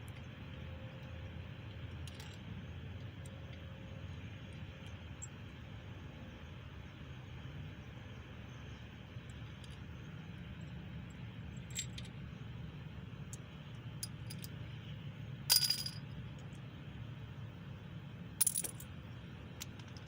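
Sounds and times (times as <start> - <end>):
low background rumble: 0.0 - 20.0
metal parts clicking and clinking: 2.0 - 2.4, 11.5 - 12.2, 14.0 - 14.6, 15.5 - 16.6, 18.4 - 18.9, 19.6 - 20.0.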